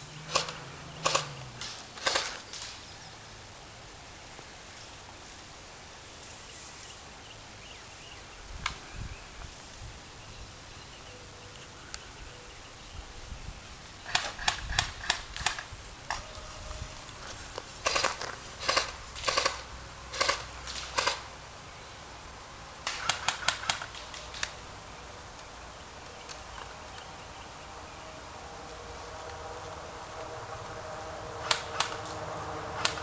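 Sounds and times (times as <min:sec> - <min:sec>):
airsoft guns firing pops: 0:00.3 - 0:02.8, 0:22.8 - 0:24.6, 0:31.4 - 0:32.1.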